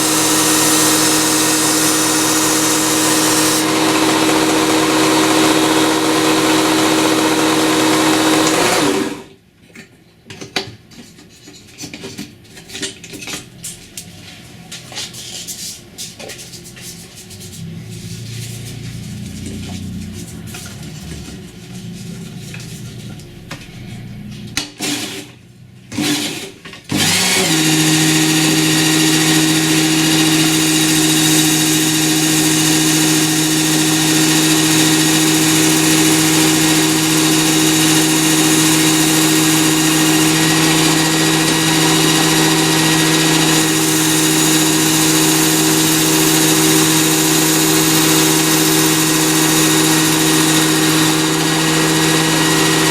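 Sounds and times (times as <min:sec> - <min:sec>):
belt sharpener motor hum: 0:00.0 - 0:09.3, 0:26.9 - 0:52.9.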